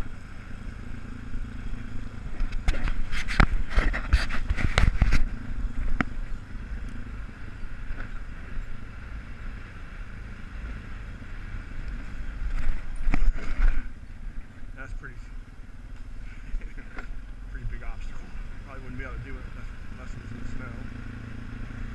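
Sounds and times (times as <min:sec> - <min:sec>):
atv engine running: 0:00.0 - 0:21.9
knocks and rattles over bumps: 0:02.1 - 0:06.4.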